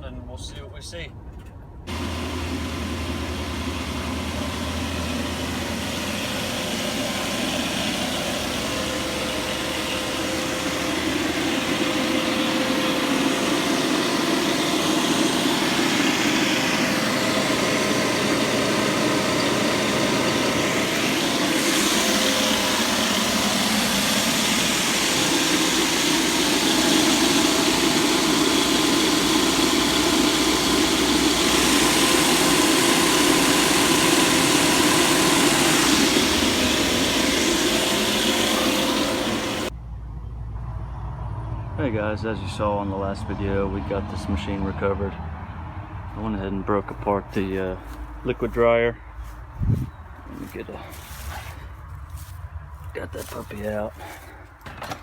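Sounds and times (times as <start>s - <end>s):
machine humming: 1.9s - 39.8s.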